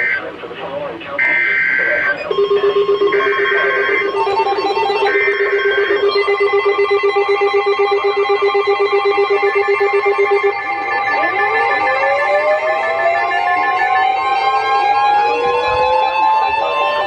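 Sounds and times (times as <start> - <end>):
steady attention tone: 0.0 - 17.0
warbling digital data tones: 1.2 - 17.0
pulsing low buzzing tone: 2.7 - 13.8.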